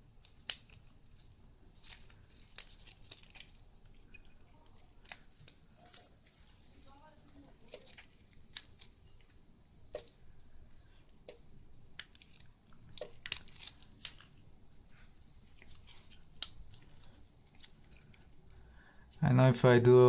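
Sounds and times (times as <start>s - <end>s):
faint steady hiss: 0.0s - 20.0s.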